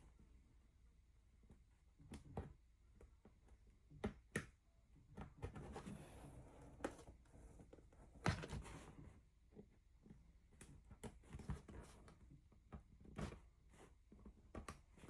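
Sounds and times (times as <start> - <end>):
soft scraping of plastic board: 5.5 - 9.2.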